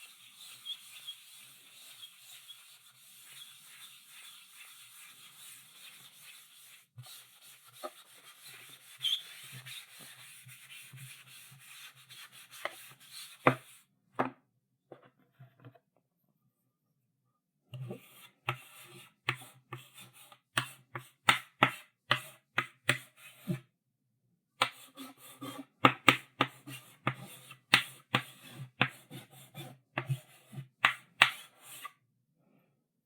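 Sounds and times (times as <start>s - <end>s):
chalk scratching on blackboard: 0.0s - 13.8s, 24.6s - 31.9s
chalk tapping on board: 19.3s - 23.2s, 24.6s - 31.9s.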